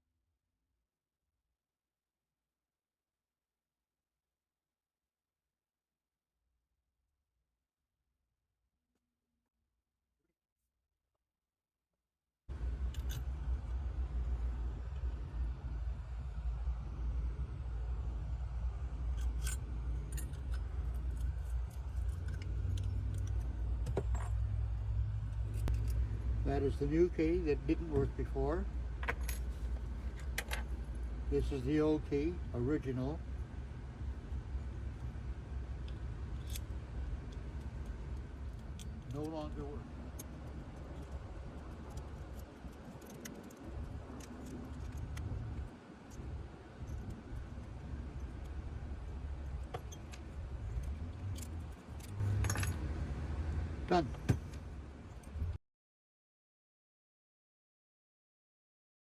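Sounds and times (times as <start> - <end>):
steady low hum: 12.5 - 55.6
metal clicks of lock parts: 12.8 - 13.4, 19.2 - 24.6, 25.3 - 26.1, 29.0 - 30.8, 35.9 - 39.4, 41.9 - 45.4, 49.5 - 53.0.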